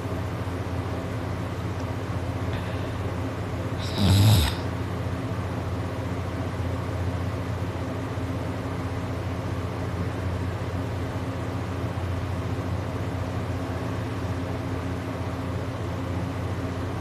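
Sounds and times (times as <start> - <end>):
steady low hum: 0.0 - 17.0
person snoring: 3.8 - 4.7.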